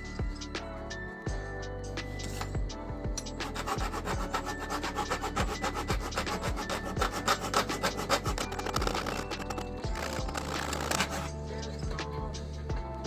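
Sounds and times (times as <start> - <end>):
music track: 0.0 - 13.0
hand sanding scraping strokes: 3.4 - 11.3.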